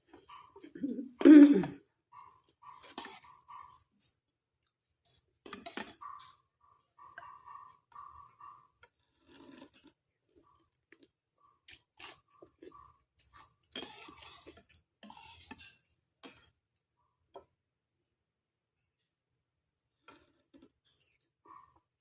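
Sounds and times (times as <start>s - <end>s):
chewing: 2.1s - 16.5s.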